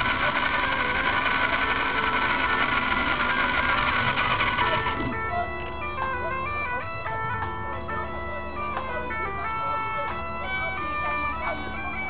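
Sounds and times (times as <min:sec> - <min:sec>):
bagpipes playing: 0:00.0 - 0:12.0
loud mechanical noise: 0:00.0 - 0:12.0.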